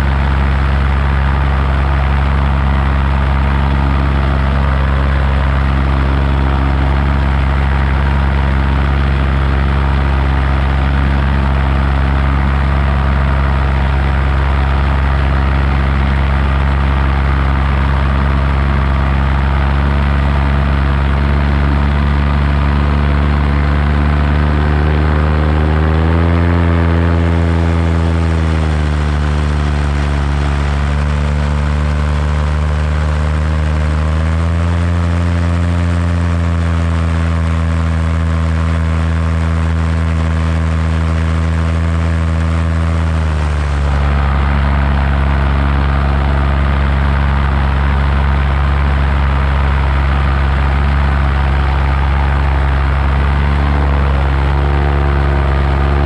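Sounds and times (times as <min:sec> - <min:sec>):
paramotor engine and propeller: 0:00.0 - 0:56.0.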